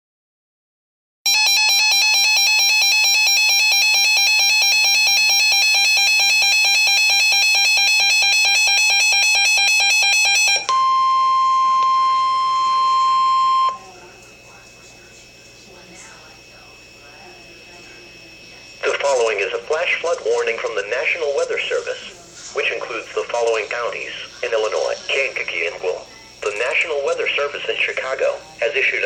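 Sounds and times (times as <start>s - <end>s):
pulsing electronic alarm: 1.3s - 22.1s
steady warning tone: 1.3s - 29.0s.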